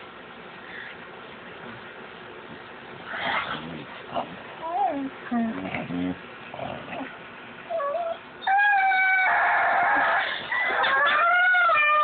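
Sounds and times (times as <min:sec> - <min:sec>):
dog howling calls: 0:07.7 - 0:12.0
dog yelp: 0:07.7 - 0:12.0.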